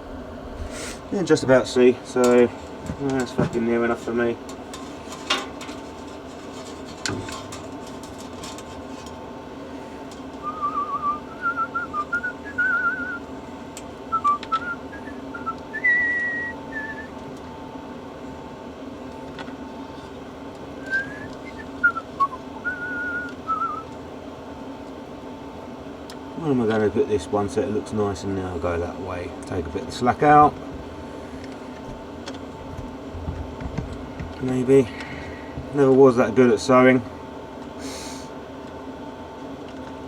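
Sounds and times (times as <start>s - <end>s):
steady hum: 0.0s - 40.0s
man whistling a tune: 10.4s - 13.2s, 14.1s - 17.1s, 20.8s - 23.9s.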